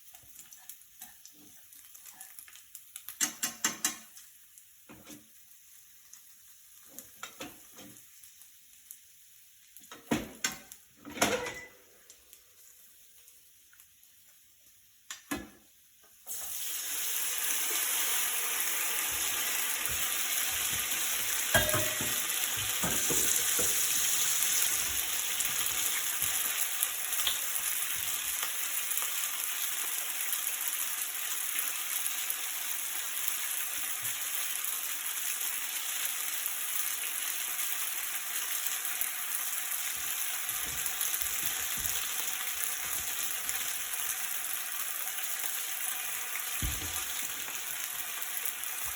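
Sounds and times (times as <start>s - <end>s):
food sizzling in frying pan: 0.0s - 48.9s
utensil knocking against pan: 21.5s - 23.8s.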